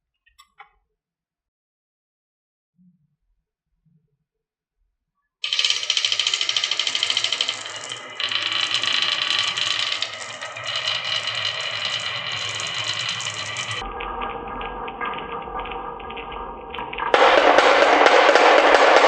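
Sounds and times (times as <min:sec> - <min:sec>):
marbles clattering down wooden track: 0:05.4 - 0:19.0.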